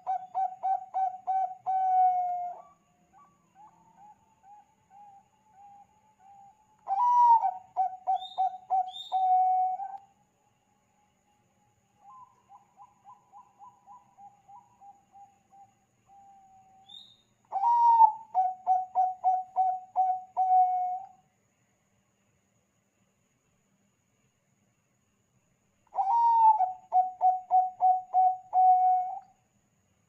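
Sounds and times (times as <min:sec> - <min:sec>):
dove cooing: 0:00.0 - 0:10.0, 0:17.5 - 0:21.1, 0:26.0 - 0:29.2.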